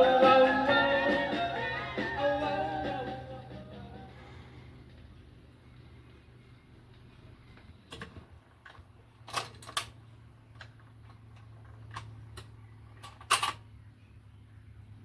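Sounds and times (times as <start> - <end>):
steady low hum: 0.0 - 9.2.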